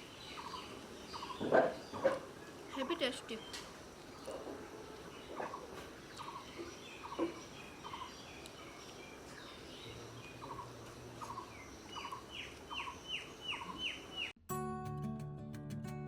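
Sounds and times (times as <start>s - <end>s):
high bird chirps: 5.3s - 14.4s.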